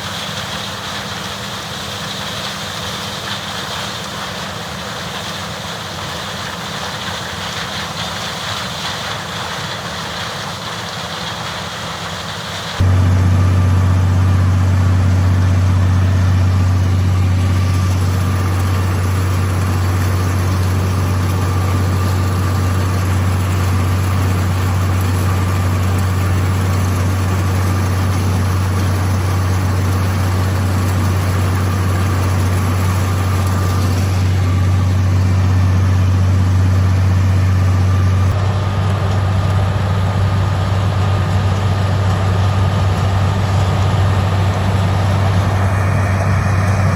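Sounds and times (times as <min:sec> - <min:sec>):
combine engine drone: 0:00.0 - 0:46.9
steady high whine: 0:12.8 - 0:46.9.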